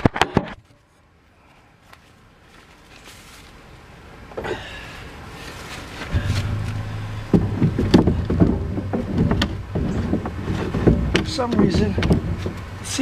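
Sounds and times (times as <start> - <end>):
low steady hum: 4.7 - 13.0.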